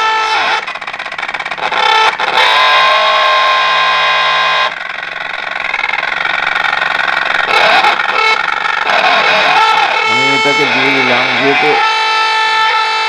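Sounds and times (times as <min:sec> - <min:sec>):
distorted beep tone from loudspeaker: 0:10.0 - 0:11.8.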